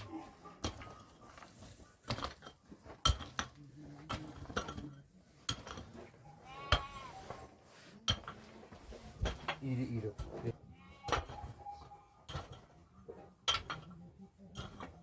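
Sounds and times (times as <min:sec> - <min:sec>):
utensils knocking and clinking: 0:00.0 - 0:06.9, 0:08.1 - 0:15.0
livestock bleat: 0:06.4 - 0:07.2, 0:10.6 - 0:11.1.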